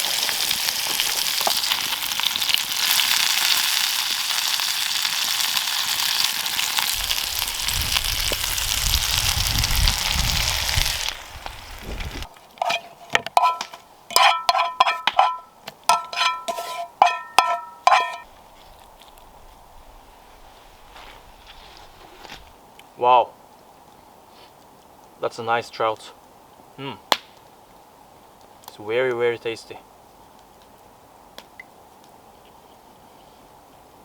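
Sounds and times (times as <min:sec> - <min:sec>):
fish sizzling in a pan: 0:00.0 - 0:12.3.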